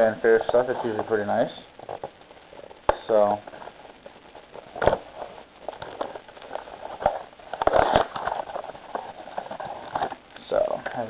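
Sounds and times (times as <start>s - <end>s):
packaging tearing and rustling: 3.4s - 10.2s.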